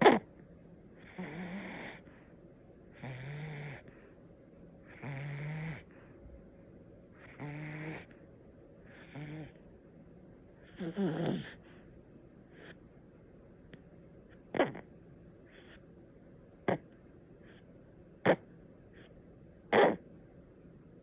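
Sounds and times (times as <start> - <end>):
snoring low buzzing rasp: 1.0 - 2.2, 2.9 - 4.0, 4.8 - 6.0, 7.2 - 8.2, 8.9 - 9.6, 10.6 - 11.6, 14.4 - 14.9.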